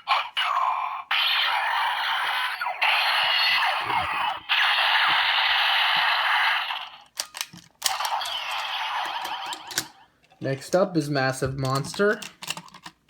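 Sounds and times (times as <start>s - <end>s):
electronic toy sound effects: 0.0s - 7.0s, 7.9s - 10.0s
plastic clicks from handling toy: 7.0s - 8.4s, 11.5s - 13.0s.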